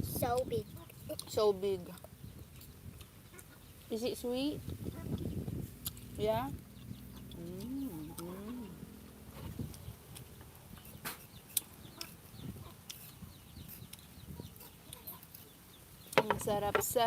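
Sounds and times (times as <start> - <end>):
chicken clucking: 6.8 - 15.6
fruit peeling clicks and snaps: 9.6 - 12.2, 14.8 - 16.3.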